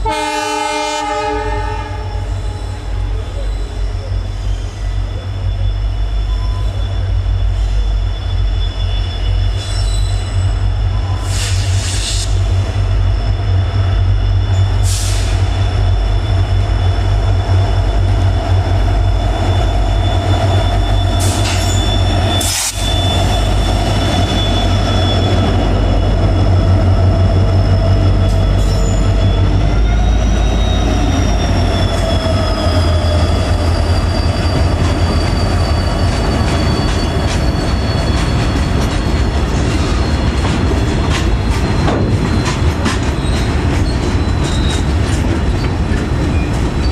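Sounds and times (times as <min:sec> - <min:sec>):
train wheels rumbling on rail: 0:00.0 - 0:46.9
wheel squeal: 0:02.3 - 0:46.9
wheel screeches: 0:19.0 - 0:26.0, 0:27.5 - 0:46.9.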